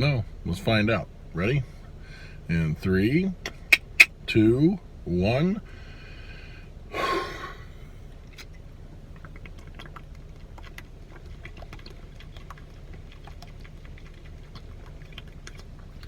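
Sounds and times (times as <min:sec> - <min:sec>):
person gulping soda: 0:06.9 - 0:16.0.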